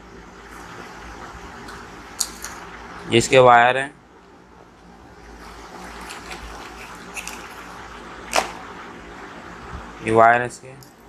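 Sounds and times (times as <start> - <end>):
wiring rustling: 5.2 - 8.8.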